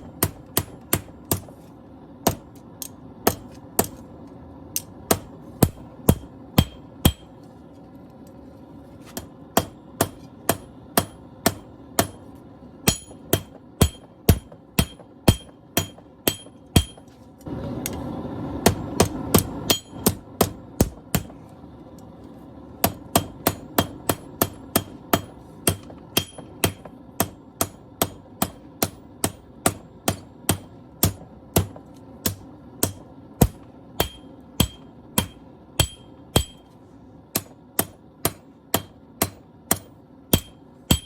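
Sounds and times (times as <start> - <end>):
hammer blows on anvil: 12.8 - 17.1, 22.8 - 36.7, 37.3 - 41.0.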